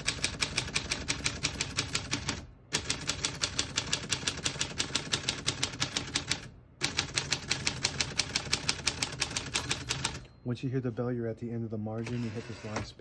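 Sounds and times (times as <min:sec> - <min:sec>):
typewriter keys typing: 0:00.0 - 0:10.3.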